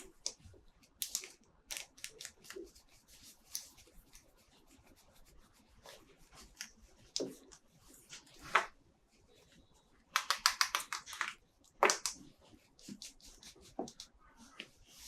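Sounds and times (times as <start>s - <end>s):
plastic parts clicking: 1.0s - 2.5s, 10.1s - 12.2s.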